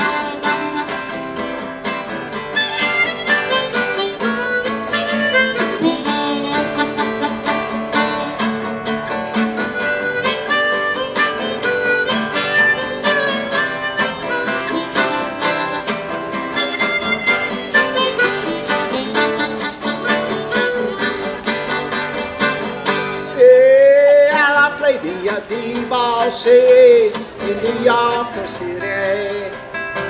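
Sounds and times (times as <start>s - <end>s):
harmonica solo: 0.0s - 24.2s
strummed guitar: 0.0s - 30.0s.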